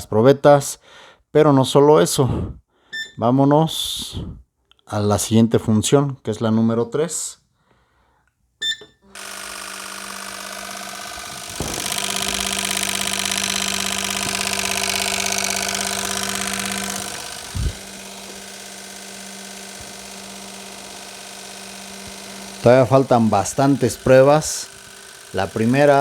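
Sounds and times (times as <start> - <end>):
electric pump humming: 9.1 - 26.0
injectors hissing and ticking: 9.2 - 26.0.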